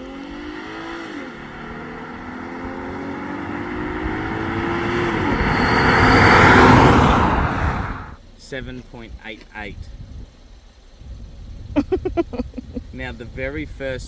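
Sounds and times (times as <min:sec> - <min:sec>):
car engine accelerating: 0:00.0 - 0:08.3
rushing noise: 0:01.0 - 0:08.2.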